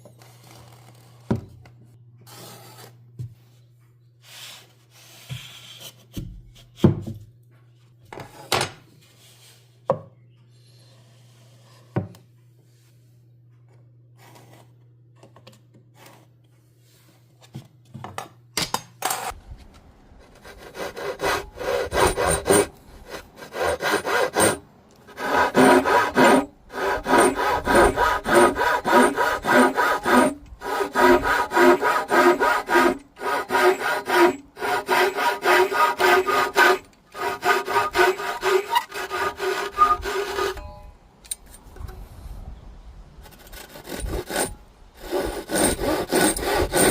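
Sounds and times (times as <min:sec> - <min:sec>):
hand saw cutting wood: 0:20.2 - 0:40.6, 0:43.2 - 0:46.9.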